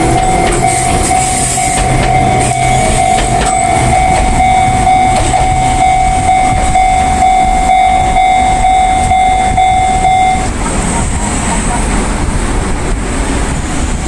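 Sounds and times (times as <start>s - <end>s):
level-crossing alarm ringing: 0.0s - 10.5s
train wheels rumbling on rails: 0.0s - 14.0s.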